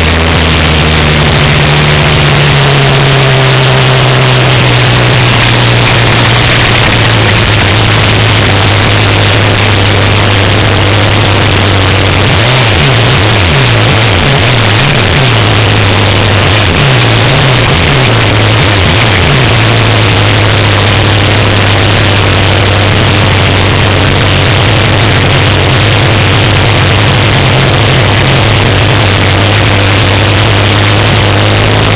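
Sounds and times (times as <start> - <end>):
engine drone: 0.0 - 31.9
loud rushing noise: 0.0 - 31.9.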